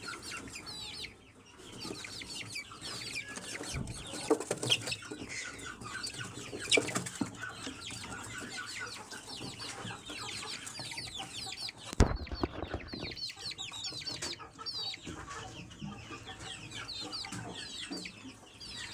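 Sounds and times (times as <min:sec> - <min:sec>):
chicks peeping: 0:00.0 - 0:18.9
loud thump: 0:12.0 - 0:13.1.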